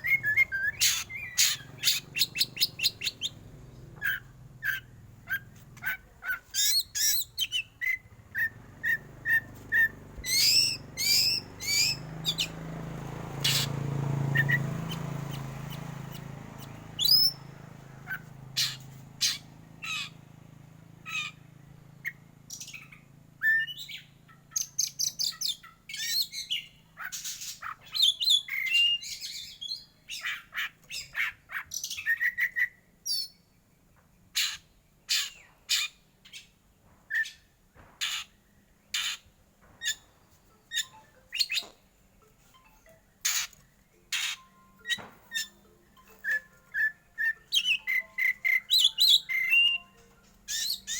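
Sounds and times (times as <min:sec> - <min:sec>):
bird singing harsh notes: 0:00.0 - 0:12.7, 0:13.3 - 0:20.2, 0:38.9 - 0:41.9, 0:42.6 - 0:50.9.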